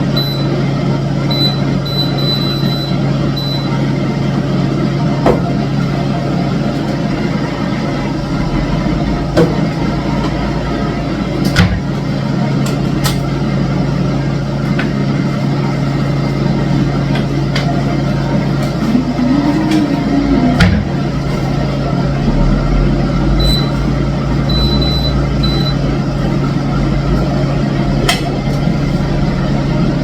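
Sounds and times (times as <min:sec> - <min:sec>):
low mechanical motor hum: 0:00.0 - 0:30.0
rising and falling tone: 0:18.6 - 0:23.4.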